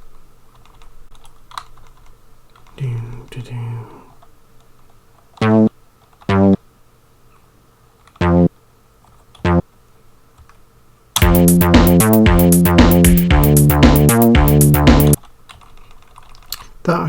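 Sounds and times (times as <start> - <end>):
programmed drum beat with bass line: 5.4 - 5.7, 6.3 - 6.6, 8.2 - 8.5, 11.2 - 15.2
single bass sample notes: 5.4 - 5.7, 6.3 - 6.6, 8.2 - 8.5, 11.2 - 15.2.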